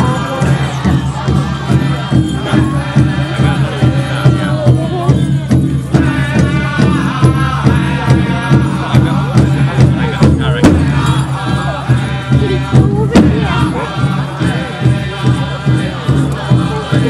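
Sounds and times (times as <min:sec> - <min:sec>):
music with steady beat and drone: 0:00.0 - 0:17.0
person singing or chanting: 0:00.0 - 0:17.0.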